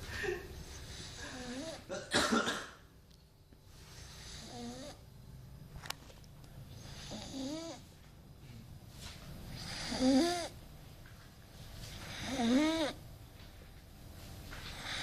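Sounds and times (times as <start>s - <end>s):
person snoring: 4.2s - 5.0s, 6.9s - 7.8s, 9.5s - 10.6s, 12.0s - 13.0s.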